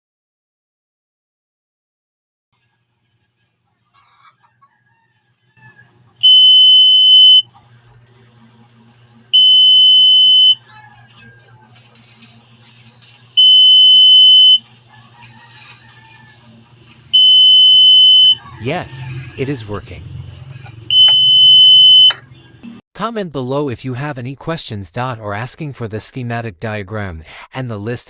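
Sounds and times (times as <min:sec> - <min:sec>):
alarm buzzer high-pitched beeps: 0:06.2 - 0:07.4, 0:09.4 - 0:10.6, 0:13.4 - 0:14.6, 0:17.1 - 0:18.4, 0:20.9 - 0:22.2.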